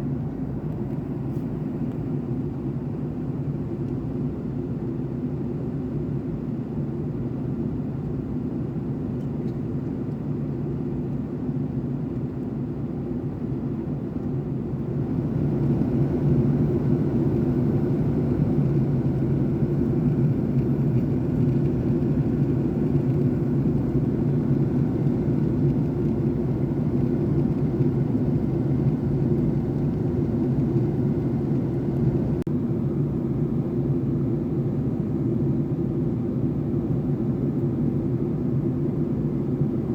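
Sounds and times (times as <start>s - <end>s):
jet engines humming: 12.8s - 39.9s
airflow over fuselage: 13.4s - 39.9s.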